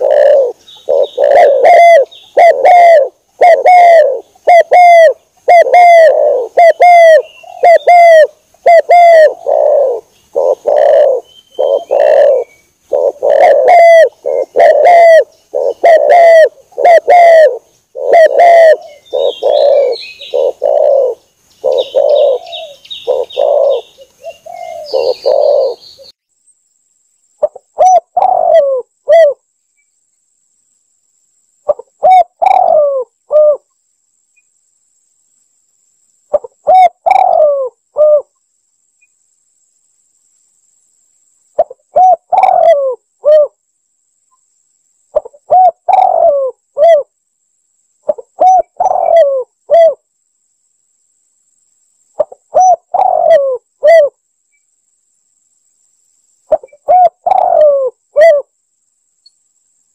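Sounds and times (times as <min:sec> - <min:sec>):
high bird chirping: 0:00.0 - 0:02.5, 0:09.3 - 0:16.2, 0:18.0 - 0:26.2
dove cooing: 0:00.0 - 0:26.1, 0:27.4 - 0:29.4, 0:31.7 - 0:33.7, 0:36.3 - 0:38.3, 0:41.6 - 0:43.5, 0:45.2 - 0:47.1, 0:48.1 - 0:50.0, 0:52.2 - 0:54.2, 0:56.5 - 0:58.5.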